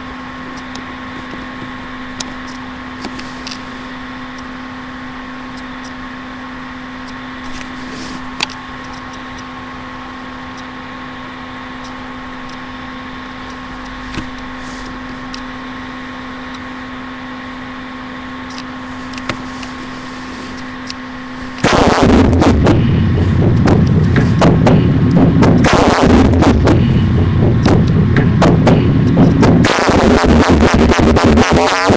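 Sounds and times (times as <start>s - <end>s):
steady electrical hum: 0.0s - 31.9s
loud distorted noise: 21.3s - 31.9s.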